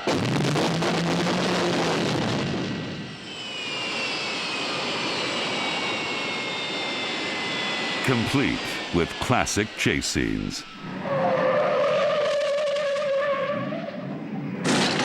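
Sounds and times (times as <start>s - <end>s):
high turbine-like whine: 3.1s - 11.2s.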